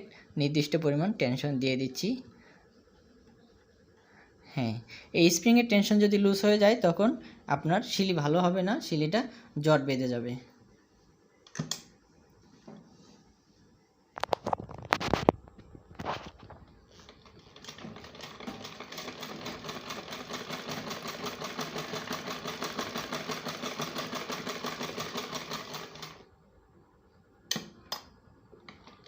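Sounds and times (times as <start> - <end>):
sewing machine clatter: 17.0 - 26.2.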